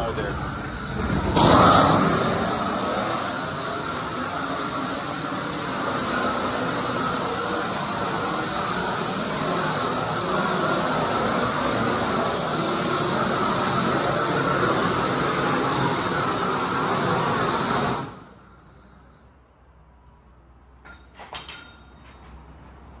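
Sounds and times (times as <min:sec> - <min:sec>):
heat gun hissing: 0:01.3 - 0:18.6.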